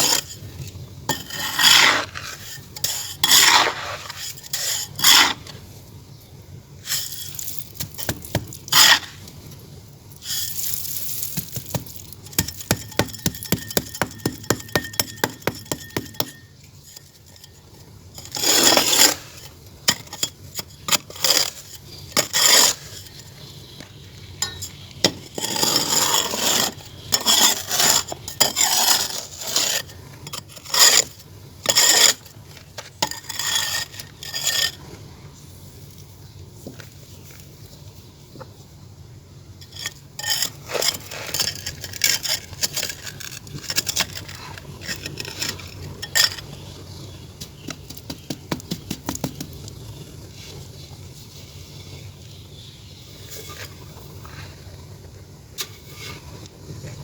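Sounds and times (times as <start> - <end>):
hands scraping and rubbing clay: 1.1 - 5.6, 10.2 - 17.5, 18.2 - 34.8, 39.6 - 52.1.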